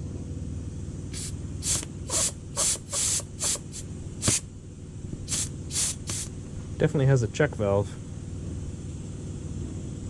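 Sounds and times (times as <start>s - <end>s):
steady low hum: 0.0s - 10.0s
compressed air hissing: 1.1s - 4.5s, 5.2s - 6.4s.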